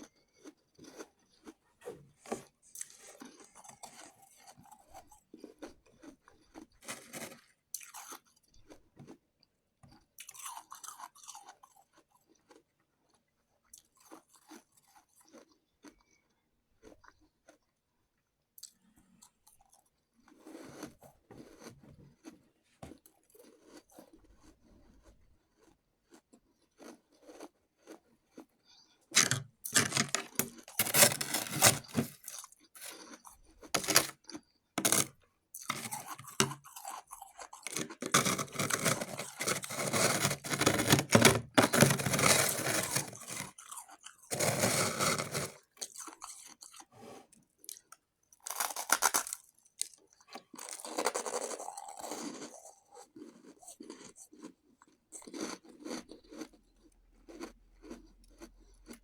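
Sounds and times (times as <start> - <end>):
person crunching shaved ice: 6.0 - 8.2, 29.2 - 46.8, 47.7 - 54.5.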